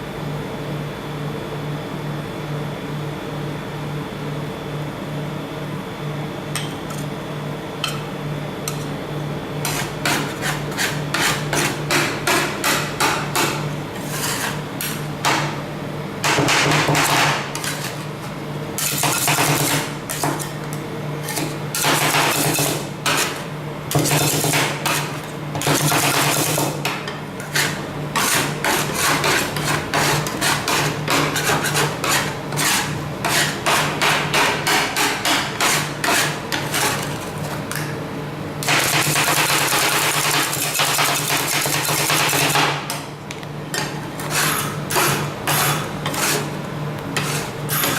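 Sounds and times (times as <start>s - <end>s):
spatulas scraping steel plate: 9.6s - 15.0s, 16.8s - 18.2s, 21.2s - 26.8s, 27.4s - 37.7s, 43.8s - 46.6s, 47.2s - 47.9s.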